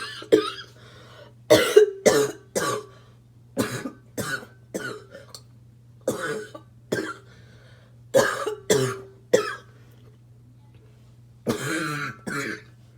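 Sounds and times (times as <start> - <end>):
harsh barking cough: 1.5 - 2.9, 3.6 - 5.2, 6.1 - 7.2, 8.2 - 9.7.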